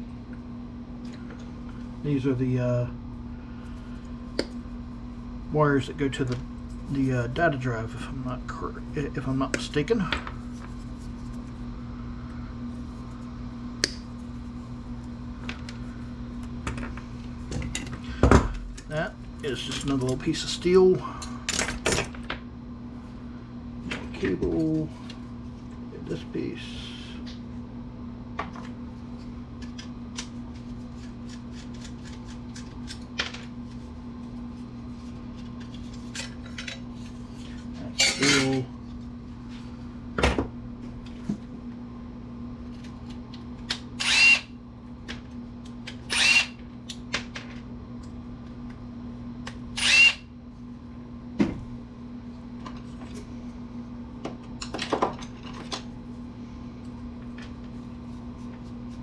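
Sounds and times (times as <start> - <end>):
steady low hum: 0.0 - 59.0
power tool whirring: 44.0 - 44.5, 46.1 - 46.6, 49.8 - 50.2.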